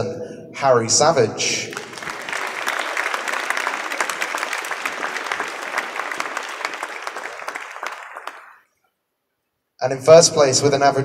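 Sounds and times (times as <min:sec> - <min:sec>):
audience applauding: 0:01.7 - 0:08.7.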